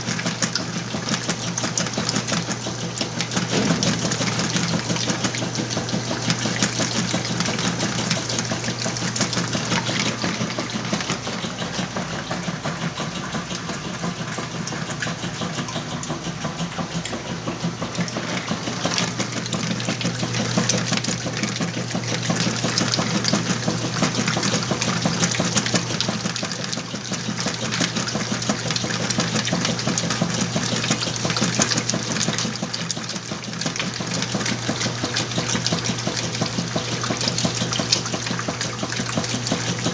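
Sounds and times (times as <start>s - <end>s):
washing machine motor hum: 0.0s - 39.9s
water churning with clothes: 0.0s - 39.9s.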